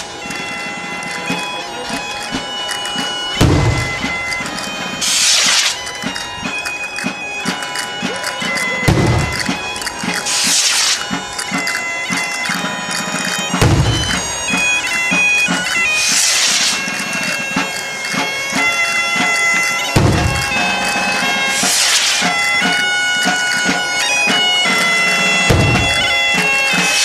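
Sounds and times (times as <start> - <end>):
bagpipe playing a tune: 0.0 - 27.0
drum beating: 0.0 - 27.0
heavy low thump: 13.6 - 14.2.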